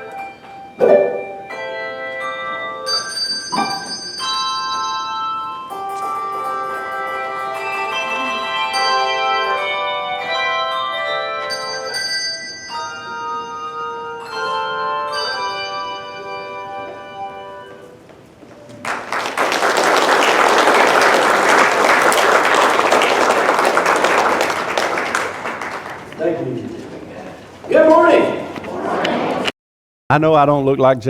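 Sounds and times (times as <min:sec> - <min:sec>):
handbell choir ringing chords: 0:00.0 - 0:17.8
congregation applauding: 0:18.7 - 0:26.5.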